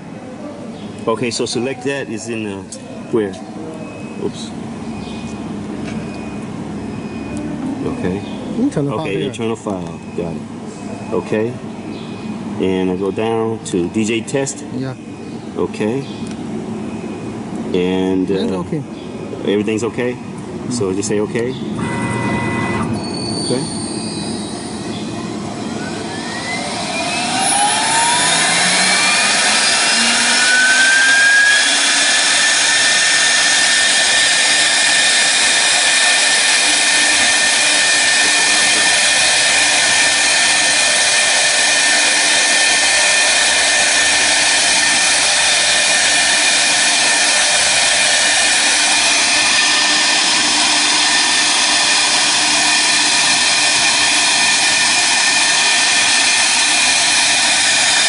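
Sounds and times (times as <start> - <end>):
router spindle whine: 21.7 - 58.0.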